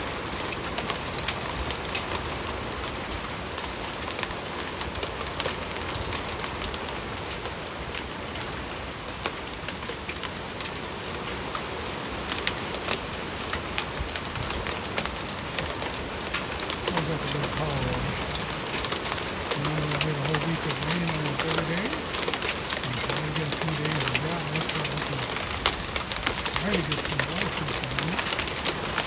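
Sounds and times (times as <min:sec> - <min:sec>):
hail pellets ticking: 0:00.0 - 0:29.0
heavy rain hiss: 0:00.0 - 0:29.0.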